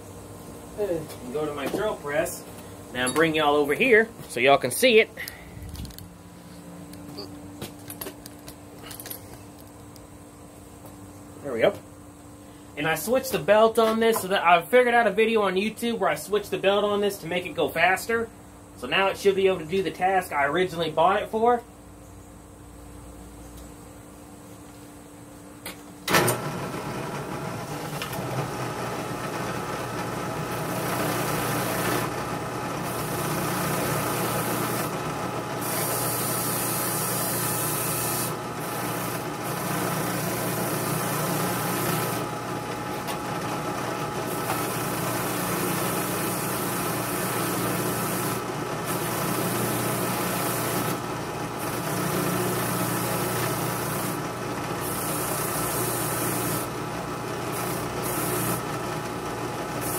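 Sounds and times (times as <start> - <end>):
drill press motor running: 26.1 - 59.9.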